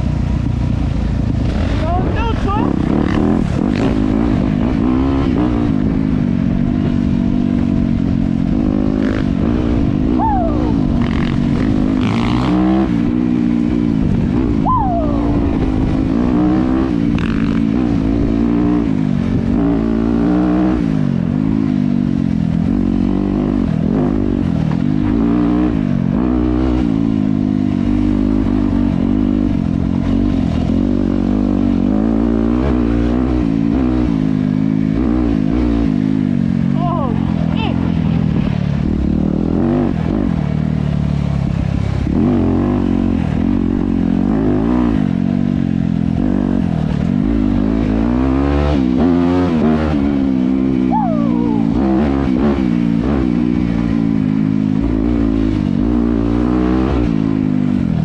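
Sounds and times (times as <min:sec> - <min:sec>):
dirt bike engine revving: 0:01.4 - 0:40.8, 0:42.0 - 0:57.8.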